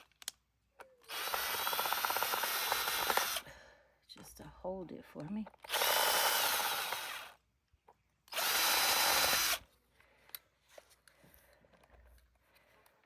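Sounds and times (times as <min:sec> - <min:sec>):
power drill whining: 0:01.0 - 0:03.5, 0:05.6 - 0:07.4, 0:08.3 - 0:09.6
faint handling noises: 0:09.6 - 0:13.0.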